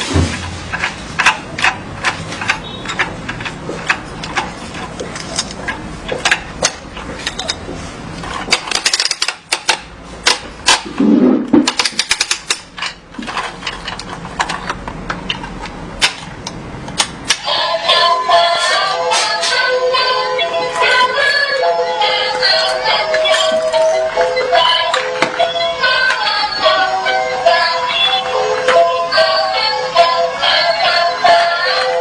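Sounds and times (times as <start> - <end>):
plastic toy parts clicking: 0.7 - 7.6, 8.2 - 10.9, 11.6 - 17.4.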